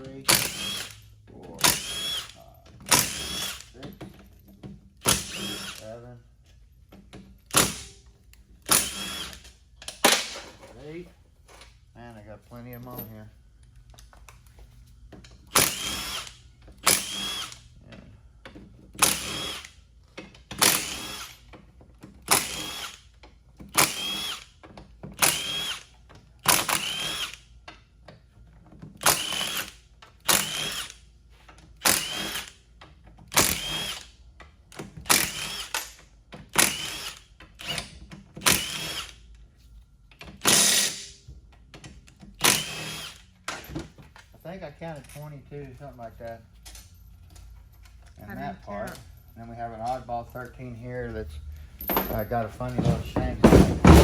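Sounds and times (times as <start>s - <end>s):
power tool spinning out bolts: 0.3s - 1.0s, 20.5s - 21.5s, 35.0s - 39.2s, 40.4s - 41.2s, 51.9s - 54.0s.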